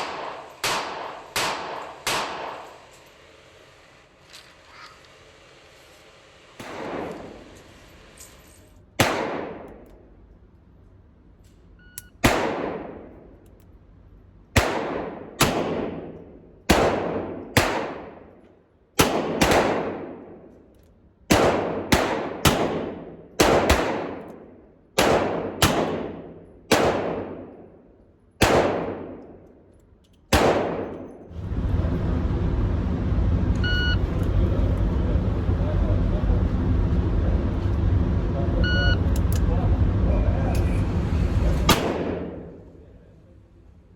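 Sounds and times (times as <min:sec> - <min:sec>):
steady noise: 0:31.3 - 0:43.9.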